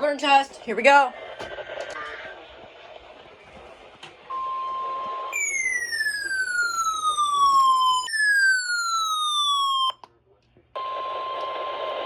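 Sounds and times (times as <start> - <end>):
electronic alert tone sweeping down: 5.4 - 10.0.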